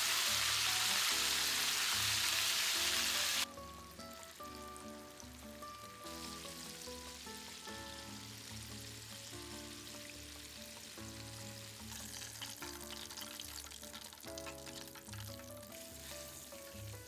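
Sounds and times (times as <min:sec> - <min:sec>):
food sizzling: 0:00.0 - 0:17.0
soft background music: 0:00.0 - 0:17.0.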